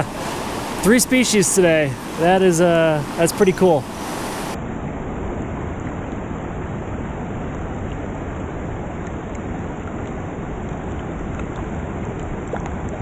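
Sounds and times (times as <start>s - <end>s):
stream running: 0.0s - 4.6s.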